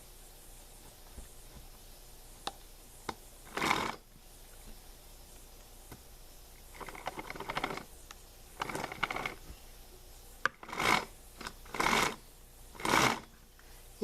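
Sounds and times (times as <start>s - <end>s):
chainsaw chain rattling and scraping: 3.5s - 4.1s, 6.8s - 7.9s, 8.6s - 9.4s, 10.6s - 12.2s, 12.8s - 13.3s.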